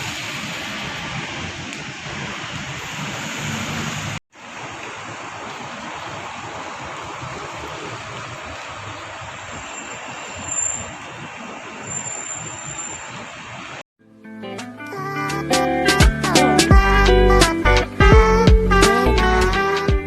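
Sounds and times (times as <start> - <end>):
heavy rain: 0.0 - 13.8.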